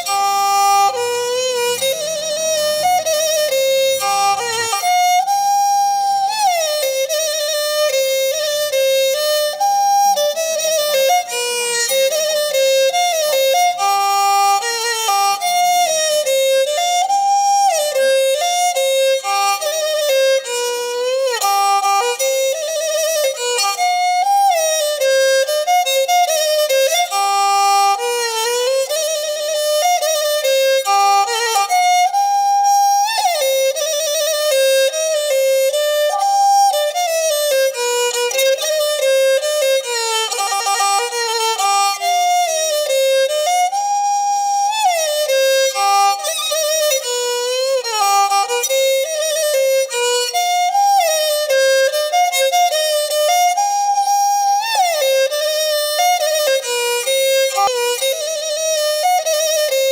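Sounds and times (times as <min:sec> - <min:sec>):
bowed string solo melody: 0:00.0 - 0:43.9.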